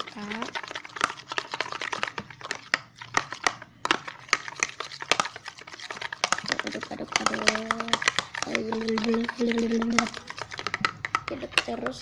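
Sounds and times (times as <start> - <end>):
spoon stirring glue: 0.0 - 12.0
spoon tapping bowl: 6.2 - 12.0.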